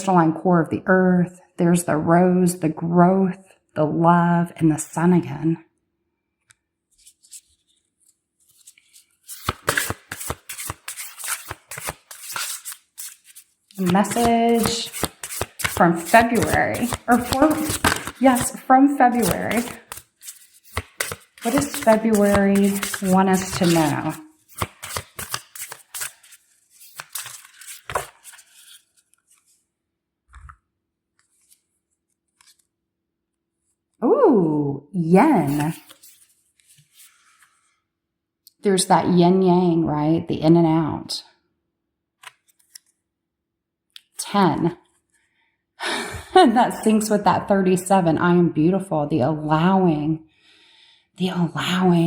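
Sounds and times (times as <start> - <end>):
cards being shuffled: 6.9 - 29.6, 30.3 - 32.7, 35.3 - 37.6, 42.2 - 43.0.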